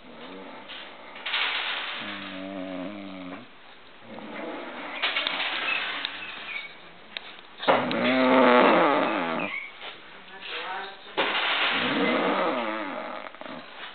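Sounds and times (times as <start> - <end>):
woman snoring: 7.9 - 9.6, 11.8 - 13.7.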